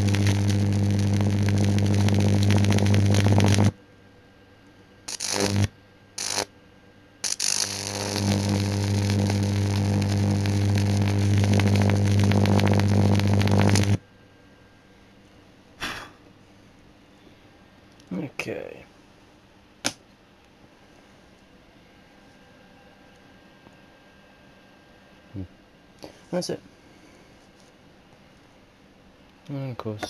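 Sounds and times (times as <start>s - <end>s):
high-voltage arcing crackle: 0.0s - 3.8s, 5.1s - 6.5s, 7.2s - 14.0s
transformer mains hum: 0.0s - 30.0s.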